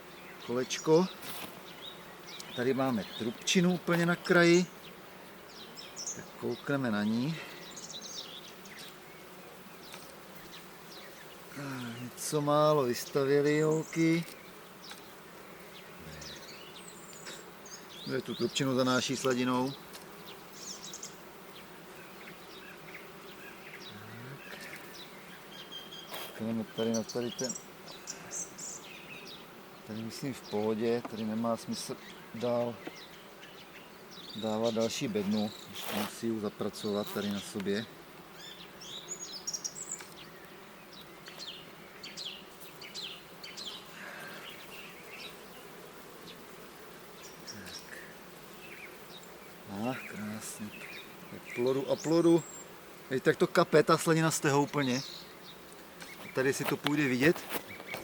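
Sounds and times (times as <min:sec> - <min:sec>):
honeybees buzzing: 0:00.0 - 0:58.0.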